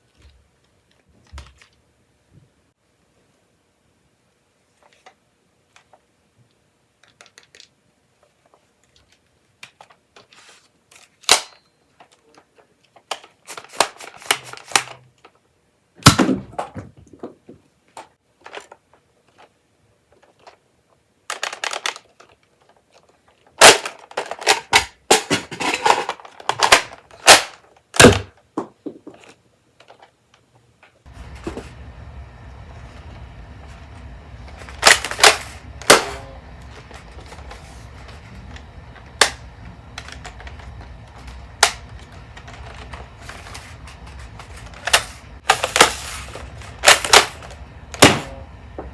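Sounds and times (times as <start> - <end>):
plastic toy blaster clacks: 10.9 - 12.3, 13.0 - 15.3, 21.3 - 28.4, 34.8 - 36.2, 44.4 - 48.2
low hum: 31.1 - 48.9.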